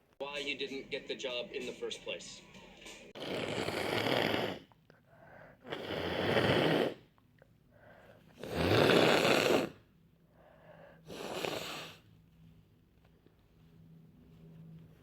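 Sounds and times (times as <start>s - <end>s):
congested nose being blown: 3.2s - 4.8s, 5.6s - 7.1s, 8.4s - 9.8s, 11.0s - 12.1s.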